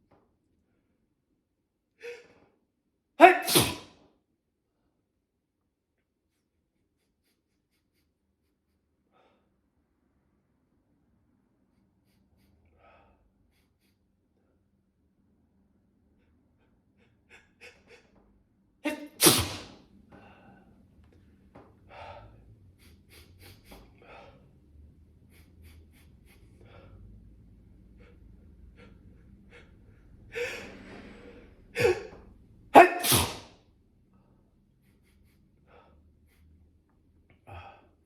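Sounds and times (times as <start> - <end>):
person sneezing: 3.2 - 3.9, 18.8 - 19.8, 31.8 - 32.2, 32.8 - 33.5
breathing and sniffing: 18.9 - 20.7, 21.9 - 24.6, 25.2 - 32.1, 32.8 - 33.5.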